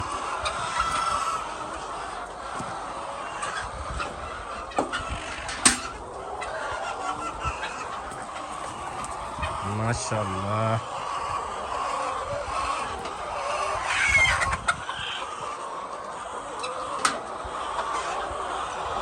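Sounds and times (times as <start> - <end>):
chickens clucking: 0.0 - 19.0.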